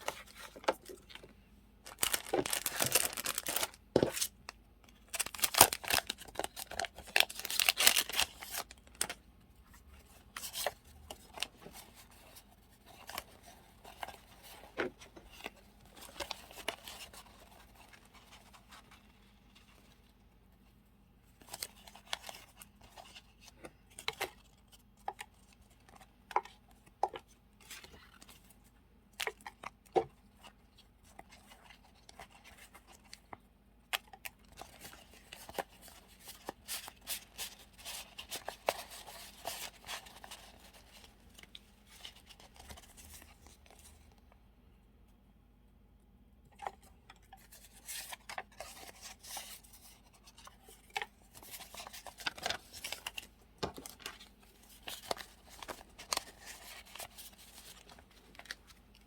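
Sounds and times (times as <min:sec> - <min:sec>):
paper rustling and crinkling: 0:00.0 - 0:20.2, 0:34.0 - 0:44.2, 0:46.6 - 0:59.0.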